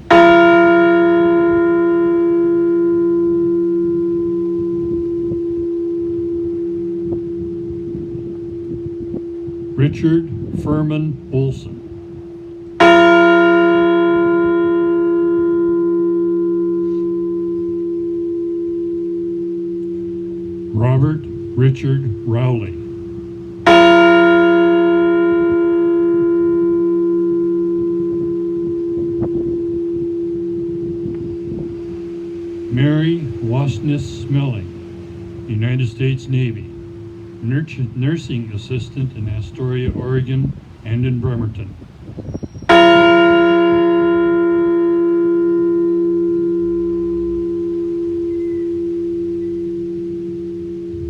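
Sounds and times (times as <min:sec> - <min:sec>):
large bell ringing: 0:00.0 - 0:51.0.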